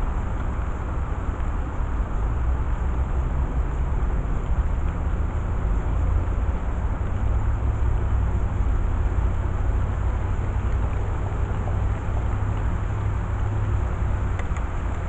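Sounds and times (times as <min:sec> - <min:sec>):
low rumble with hiss: 0:00.0 - 0:15.0.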